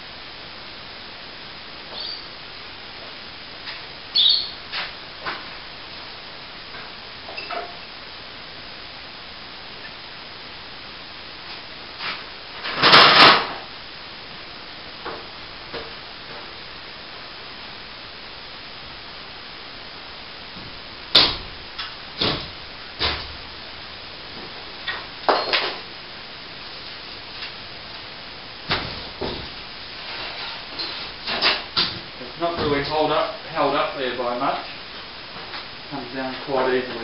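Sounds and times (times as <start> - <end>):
steady hiss: 0.0 - 37.0
plasterboard scraping crash: 12.0 - 13.6.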